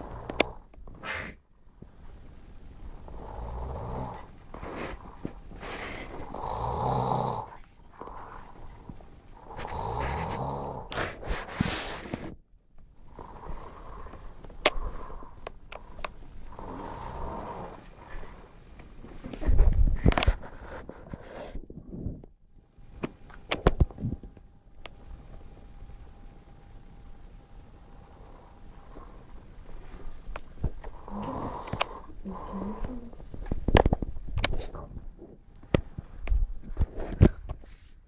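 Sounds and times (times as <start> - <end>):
man snoring loudly: 0.0 - 0.6, 3.0 - 4.3, 6.2 - 7.6, 9.4 - 11.0, 16.5 - 17.8, 31.0 - 33.1.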